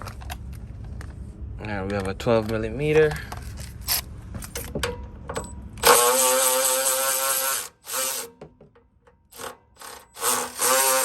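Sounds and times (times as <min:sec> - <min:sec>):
cordless ratchet motor whine: 0:05.8 - 0:08.3, 0:09.3 - 0:11.0.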